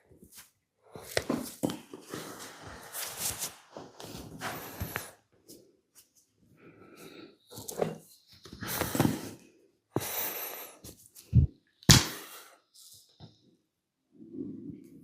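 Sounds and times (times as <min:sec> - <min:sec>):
sharp snap: 0:11.8 - 0:12.3.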